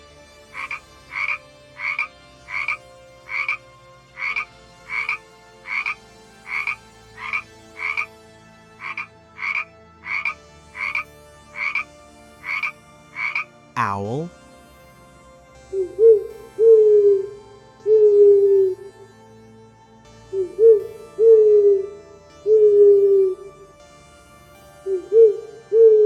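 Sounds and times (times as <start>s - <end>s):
frog croaking: 0.5s - 8.2s, 8.8s - 14.3s.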